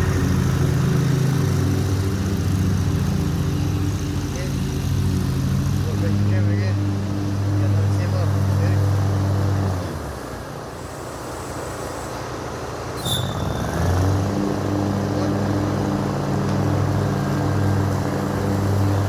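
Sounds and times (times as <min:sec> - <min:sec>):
lawn mower engine droning: 0:00.0 - 0:19.0
brief high squeak: 0:13.0 - 0:14.1.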